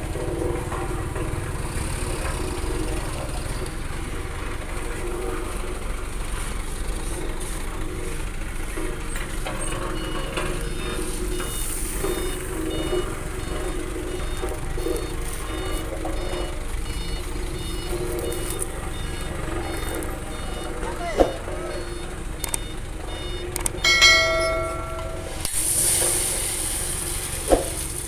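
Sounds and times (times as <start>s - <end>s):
truck engine running: 0.0s - 28.0s
reversing alarm beeping: 9.0s - 26.2s.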